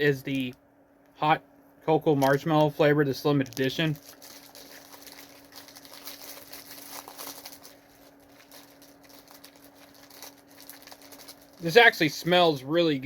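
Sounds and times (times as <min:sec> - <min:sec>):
packaging rustling and crinkling: 0:02.2 - 0:12.5.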